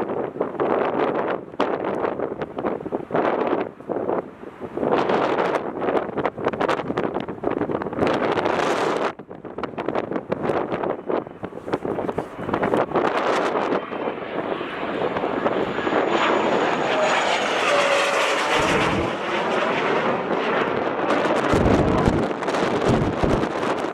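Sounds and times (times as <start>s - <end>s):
wind buffeting microphone: 0.0s - 23.9s
jet engine rushing: 10.9s - 23.9s.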